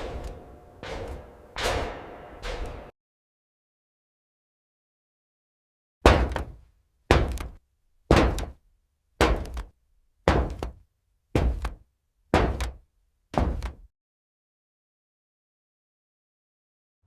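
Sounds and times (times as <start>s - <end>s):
heavy footsteps on metal: 0.0s - 2.9s, 6.1s - 8.6s, 9.2s - 10.8s, 11.4s - 12.8s, 13.4s - 13.9s.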